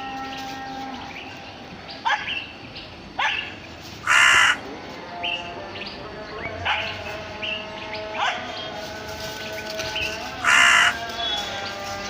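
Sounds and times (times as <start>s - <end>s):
harsh animal calls: 4.0s - 4.6s, 10.3s - 11.4s.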